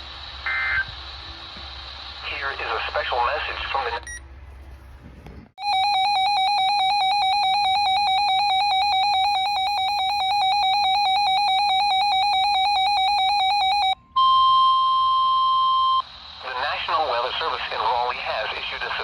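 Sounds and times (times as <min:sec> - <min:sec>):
fast-pulsing electronic alarm beep: 0:05.6 - 0:16.1
steady single-pitch alarm tone: 0:05.6 - 0:16.1.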